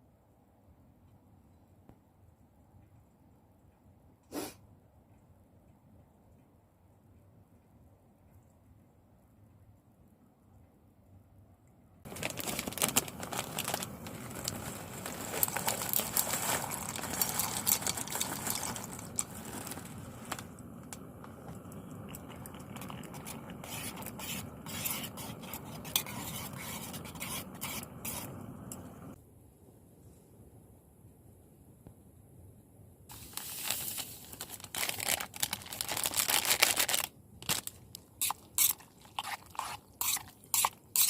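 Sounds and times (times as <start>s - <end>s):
utensils scraping and clinking metal: 12.1s - 29.2s, 38.2s - 41.0s.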